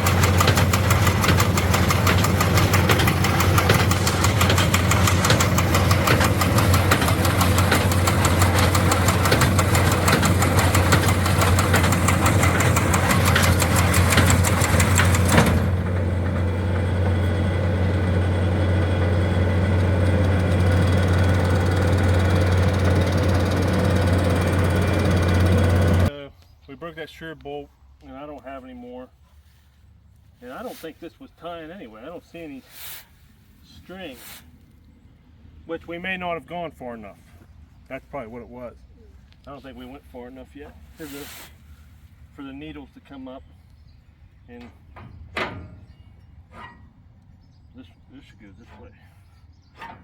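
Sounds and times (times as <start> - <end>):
baler clattering: 0.0 - 26.1
tractor engine hum: 0.0 - 26.1, 37.9 - 50.0.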